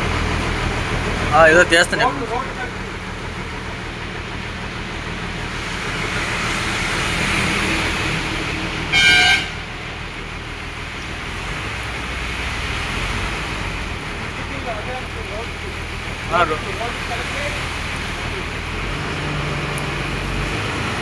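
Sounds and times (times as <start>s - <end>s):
road traffic: 0.0s - 21.0s
vehicle engine running: 0.0s - 21.0s
vehicle horn: 8.9s - 10.0s.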